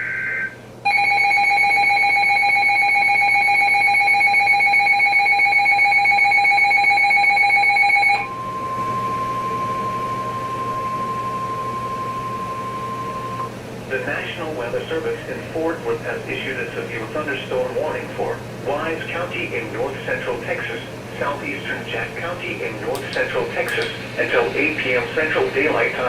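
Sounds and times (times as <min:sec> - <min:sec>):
steady warning alarm tone: 0:00.0 - 0:26.0
electronic attention tone: 0:06.5 - 0:13.5
warbling data screech: 0:23.3 - 0:26.0.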